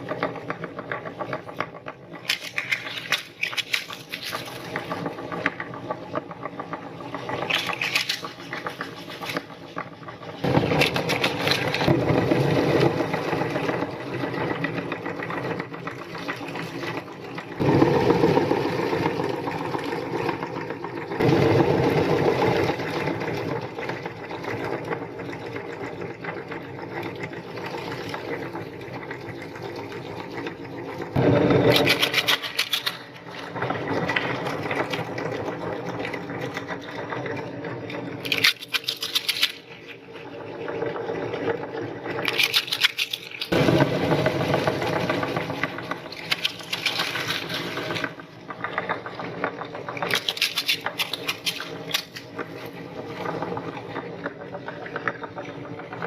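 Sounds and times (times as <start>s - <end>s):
electric meat grinder running: 10.4s - 25.6s, 31.1s - 32.2s, 43.5s - 46.4s.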